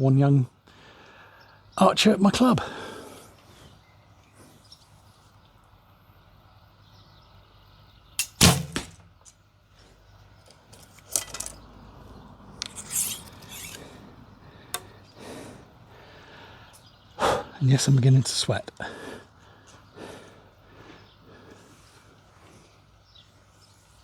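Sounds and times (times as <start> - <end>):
bow string release thump: 8.2 - 9.1, 12.6 - 13.8
arrows clicking and rattling: 8.2 - 9.4, 10.5 - 11.7, 12.5 - 14.1, 14.8 - 15.0.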